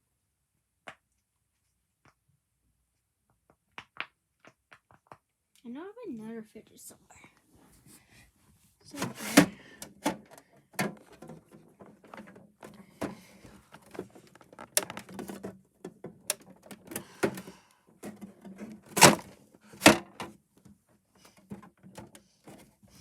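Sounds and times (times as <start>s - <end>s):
small objects knocking and clattering: 3.3s - 5.4s, 10.8s - 16.9s.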